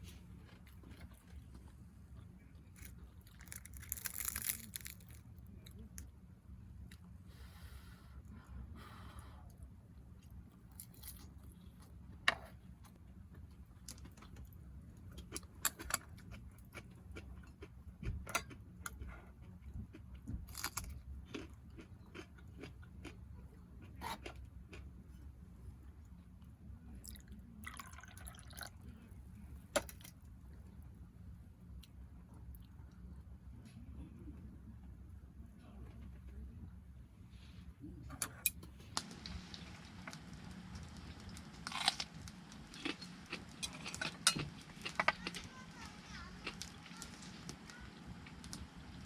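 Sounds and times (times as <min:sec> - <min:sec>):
person chewing: 0:18.4 - 0:23.2, 0:41.3 - 0:47.5.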